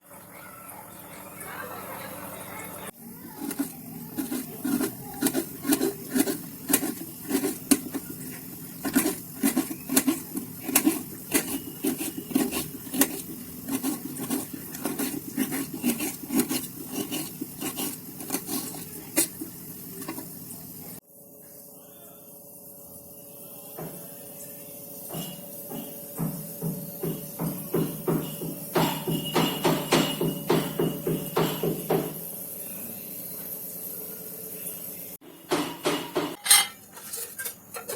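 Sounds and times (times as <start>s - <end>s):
knife chopping on cutting board: 3.4s - 8.1s, 8.8s - 19.4s.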